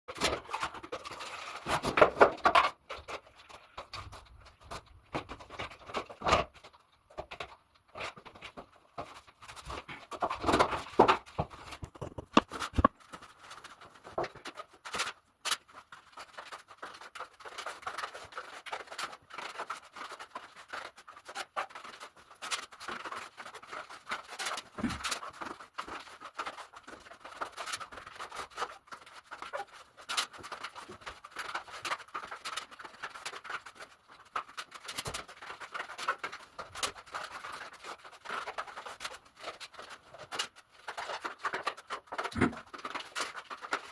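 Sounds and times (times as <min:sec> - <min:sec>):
grouting tool scraping tiles: 0:09.0 - 0:13.4.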